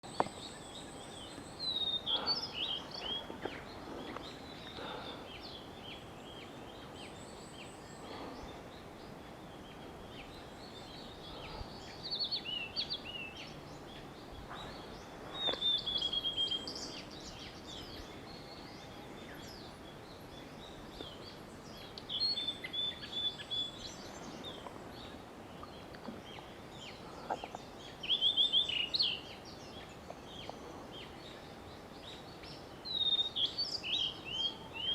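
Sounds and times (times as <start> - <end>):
bird singing whistled notes: 0.0 - 3.7, 9.4 - 19.7, 20.4 - 24.7, 27.9 - 30.6, 31.2 - 34.9
steady background hiss: 0.0 - 34.9.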